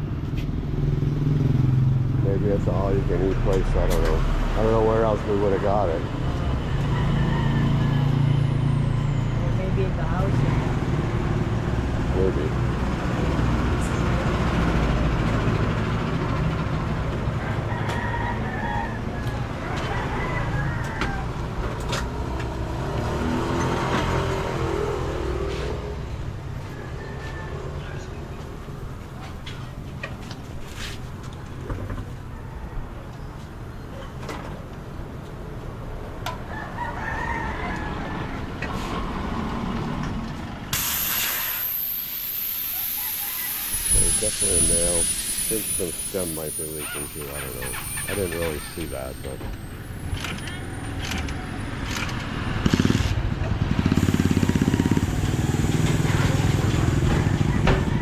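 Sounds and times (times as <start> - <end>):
low rumble of road traffic: 0.0 - 58.0
rooster crowing: 5.0 - 9.1, 17.2 - 23.4, 26.5 - 28.4, 32.0 - 33.4, 36.4 - 38.9, 42.0 - 52.6, 54.6 - 58.0
loud hiss of air: 40.7 - 49.4.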